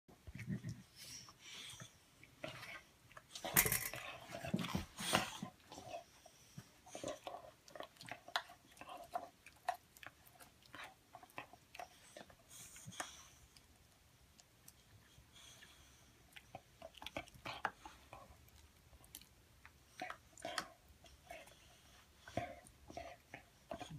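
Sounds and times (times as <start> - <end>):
chewing with wet smacks: 6.9 - 21.6.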